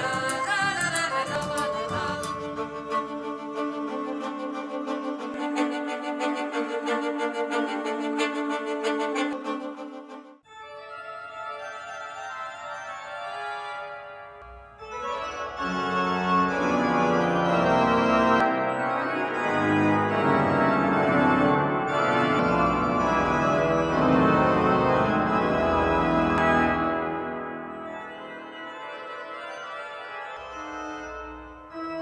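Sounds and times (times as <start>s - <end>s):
music from a portable speaker: 0.0s - 2.5s
sustained keyboard chords: 13.0s - 32.0s.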